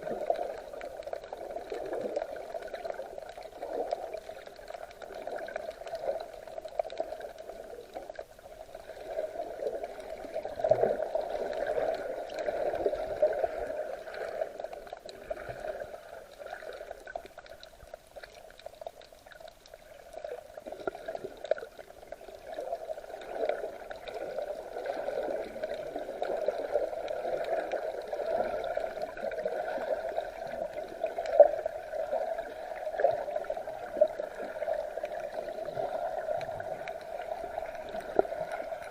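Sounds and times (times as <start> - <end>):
sea water sloshing: 0.0 - 38.9
small clicks and pops: 16.3 - 22.7.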